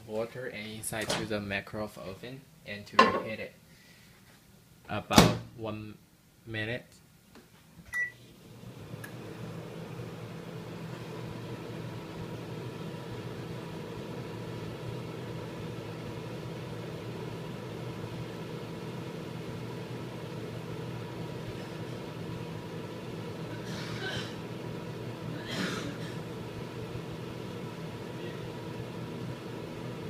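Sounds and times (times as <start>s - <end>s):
microwave oven humming: 7.9s - 30.0s.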